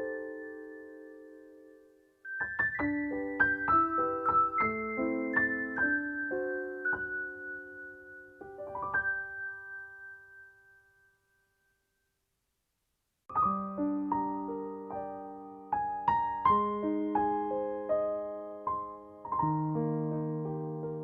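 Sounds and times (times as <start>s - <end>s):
slow piano melody: 0.0s - 11.2s, 13.3s - 21.0s.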